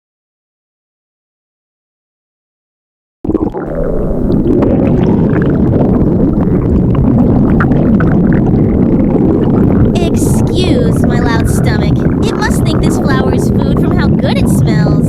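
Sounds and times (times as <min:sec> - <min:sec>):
stomach growling: 0:03.3 - 0:15.0.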